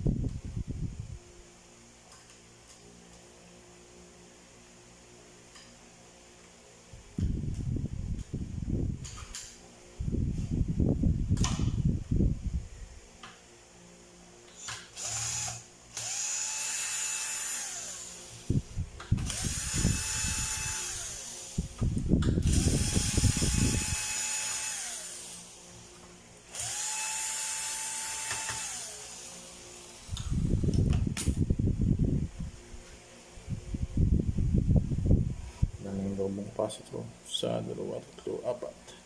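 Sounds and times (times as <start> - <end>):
electric screwdriver motor whine: 14.5 - 18.5, 19.2 - 25.6, 26.5 - 30.9.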